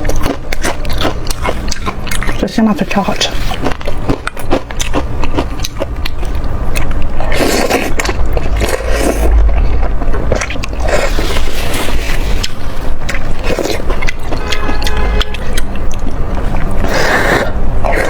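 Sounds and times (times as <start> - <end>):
wet chewing: 0.0 - 18.0
low rumble: 3.4 - 18.0.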